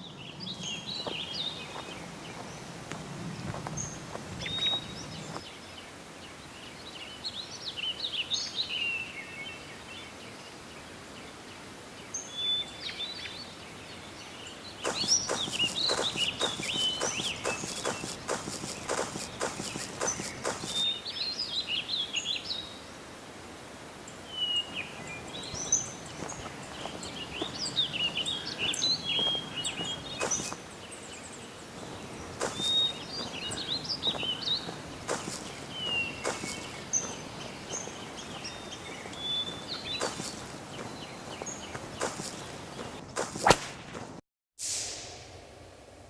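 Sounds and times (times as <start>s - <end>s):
birds chirping: 0.0s - 44.2s
outdoor background hiss: 0.0s - 46.0s.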